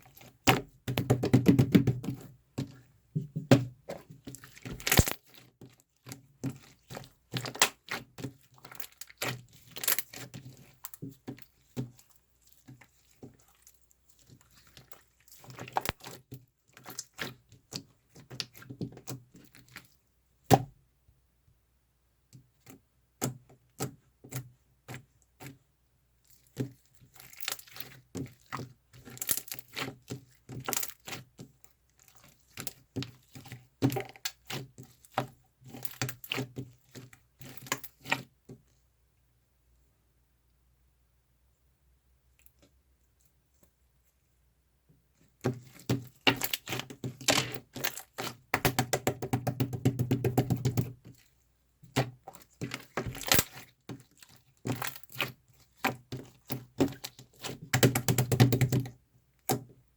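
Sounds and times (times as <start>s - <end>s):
clicks and taps of small objects: 4.7s - 5.2s, 15.8s - 16.1s, 45.4s - 51.0s, 54.6s - 59.8s.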